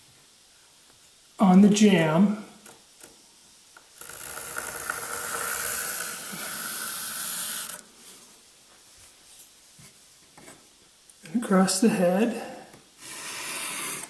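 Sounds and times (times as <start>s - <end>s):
pencil scraping over wood: 4.4s - 7.8s, 13.0s - 14.0s.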